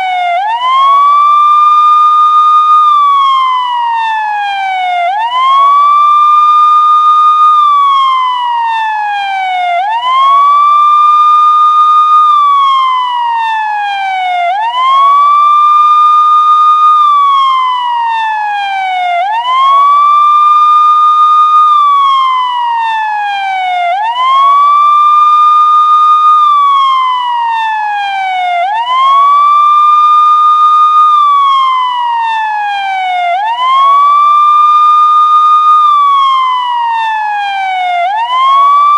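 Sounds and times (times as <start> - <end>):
police siren wailing: 0.0 - 38.9.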